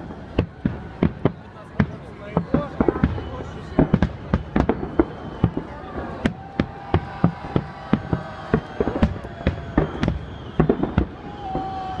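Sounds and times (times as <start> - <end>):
fireworks shells bursting: 2.4 - 11.9.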